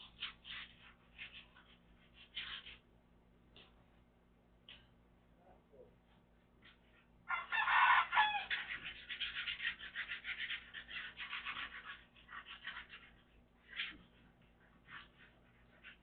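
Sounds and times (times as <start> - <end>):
chicken calling: 7.3 - 9.0.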